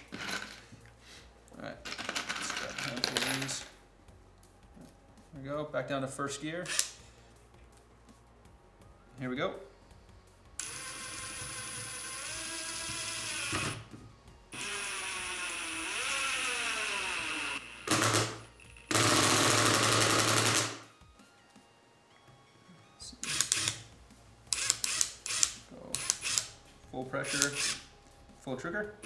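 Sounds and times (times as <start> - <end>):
impact driver motor whining: 10.6 - 13.9, 14.5 - 20.8, 23.2 - 23.9, 24.5 - 26.5, 27.3 - 27.8
impact driver rapid hammering: 17.9 - 20.8.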